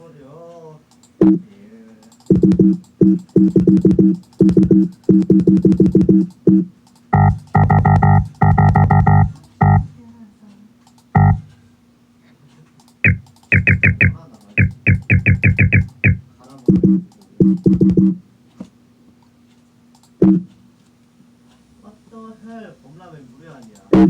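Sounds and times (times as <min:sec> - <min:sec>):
short high electronic beeps: 0:13.0 - 0:16.2
synthesized chord blasts: 0:13.0 - 0:16.2.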